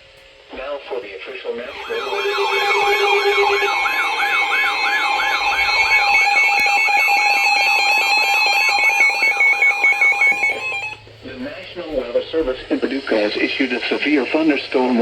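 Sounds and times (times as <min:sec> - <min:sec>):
rising and falling siren sweep: 0:01.7 - 0:11.0
steady electronic tone: 0:01.7 - 0:11.1.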